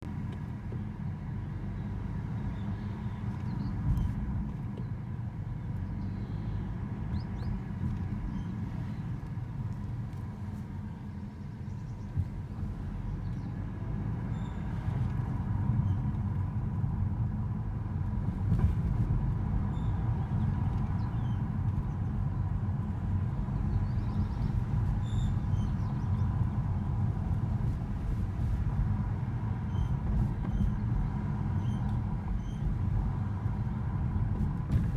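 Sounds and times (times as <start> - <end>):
vehicle engine rumble: 0.0 - 34.9.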